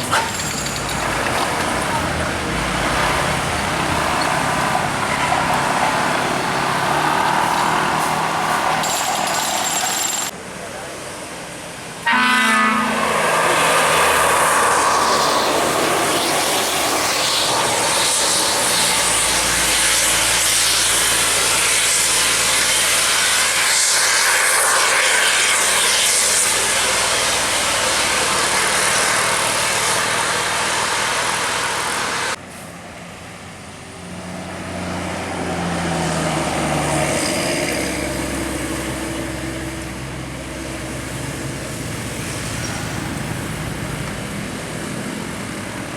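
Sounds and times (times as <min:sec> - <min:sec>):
bus engine and road noise: 0:00.0 - 0:45.9
bus horn note: 0:12.0 - 0:13.1.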